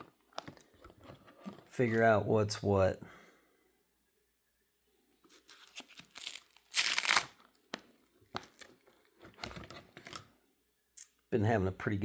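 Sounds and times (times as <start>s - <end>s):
cards shuffling and rustling: 5.3s - 10.3s.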